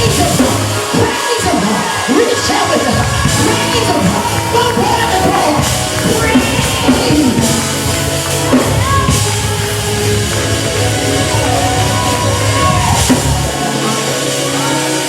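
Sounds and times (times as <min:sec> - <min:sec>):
drum kit: 0:00.0 - 0:01.3, 0:02.8 - 0:15.0
worship band music: 0:00.0 - 0:15.0.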